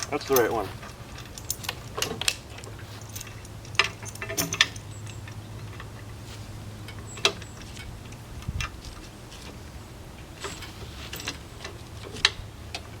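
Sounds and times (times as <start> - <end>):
metal chain clinking: 0.0 - 6.2, 10.4 - 12.3.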